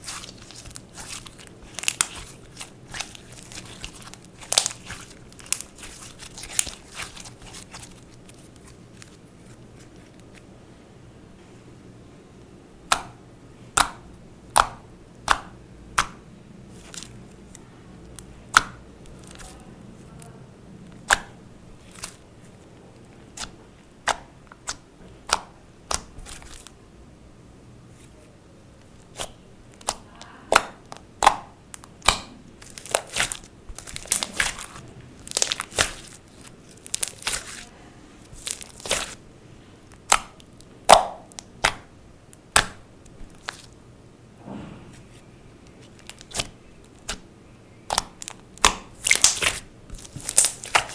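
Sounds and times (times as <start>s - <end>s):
slime popping and clicking: 13.8s - 16.2s, 21.0s - 22.2s, 23.4s - 26.7s, 29.1s - 36.2s, 40.0s - 43.7s, 47.9s - 50.9s.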